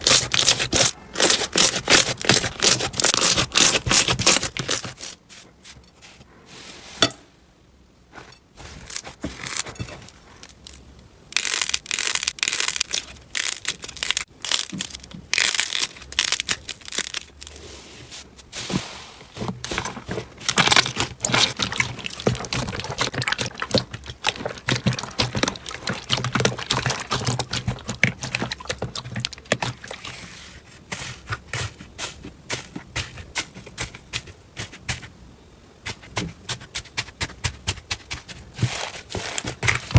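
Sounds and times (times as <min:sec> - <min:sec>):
slime crackling and popping: 0:00.0 - 0:05.1, 0:11.3 - 0:17.5, 0:20.5 - 0:30.0.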